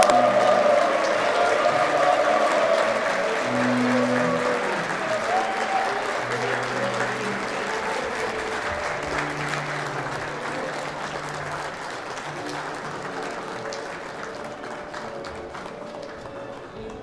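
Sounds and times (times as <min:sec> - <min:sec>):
crowd applauding: 0:00.0 - 0:17.0
instrumental background music: 0:00.0 - 0:17.0.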